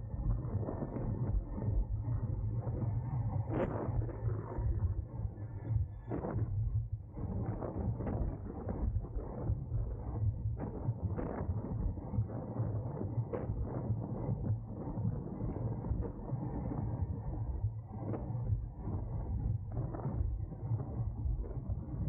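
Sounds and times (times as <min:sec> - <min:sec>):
wind rushing over camera: 0:00.0 - 0:22.0.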